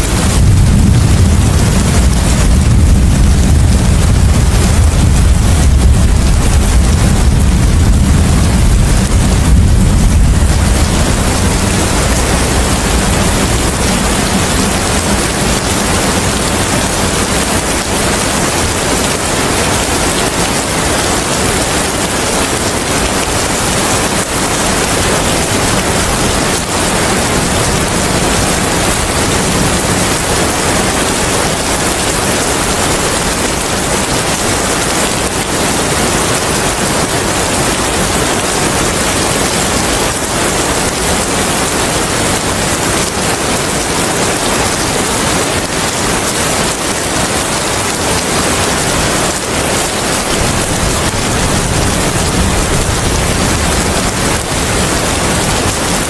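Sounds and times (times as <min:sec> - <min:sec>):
heavy rain: 0:00.0 - 0:56.0
low rumble: 0:00.1 - 0:17.4.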